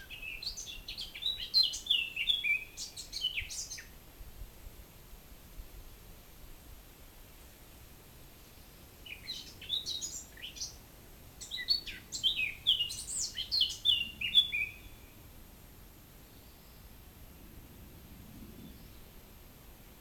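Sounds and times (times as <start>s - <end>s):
songbird singing: 0.0s - 4.0s, 8.4s - 15.3s, 16.2s - 17.0s, 18.6s - 19.3s.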